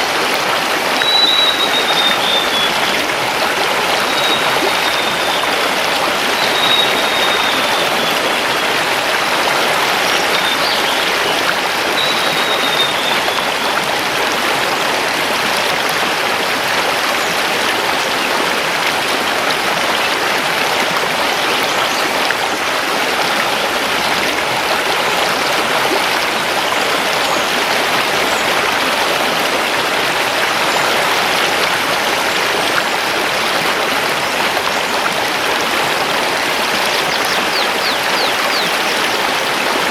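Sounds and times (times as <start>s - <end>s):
bird whistling: 1.0s - 2.8s, 35.8s - 39.9s
river rushing over stones: 27.8s - 39.9s.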